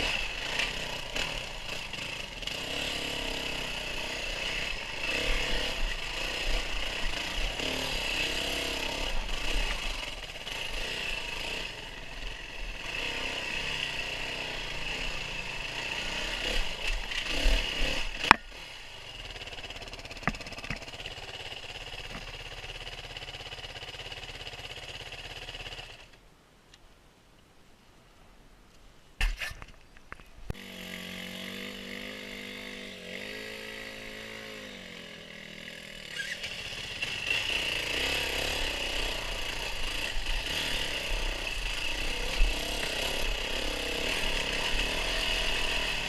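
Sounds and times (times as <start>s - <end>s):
off-road vehicle engine revving: 0.0s - 26.1s, 30.6s - 46.0s
quiet steady sound: 26.0s - 30.6s.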